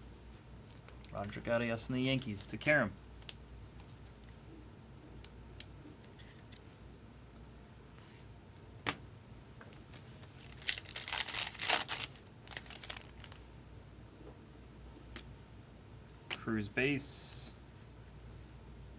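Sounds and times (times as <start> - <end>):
foil wrapper crinkling and tearing: 9.9 - 13.4.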